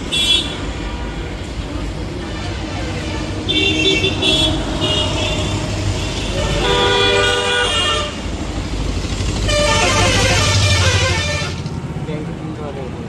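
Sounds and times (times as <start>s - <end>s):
road traffic: 0.0s - 13.0s
vehicle horn: 0.1s - 0.7s, 2.2s - 8.4s, 9.3s - 11.7s.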